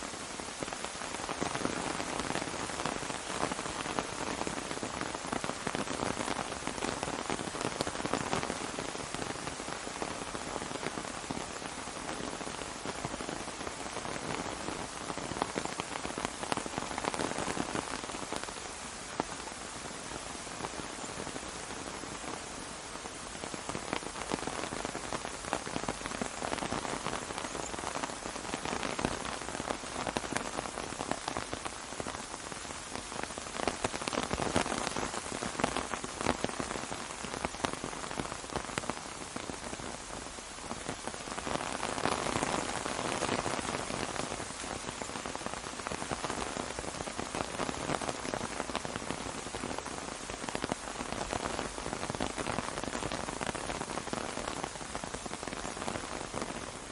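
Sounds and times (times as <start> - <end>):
rain on an umbrella: 0.0 - 56.9.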